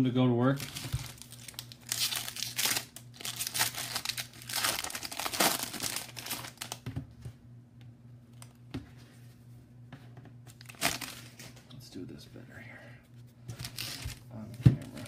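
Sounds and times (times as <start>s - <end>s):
foil wrapper crinkling and tearing: 0.6s - 6.8s, 10.5s - 11.5s, 13.6s - 14.2s.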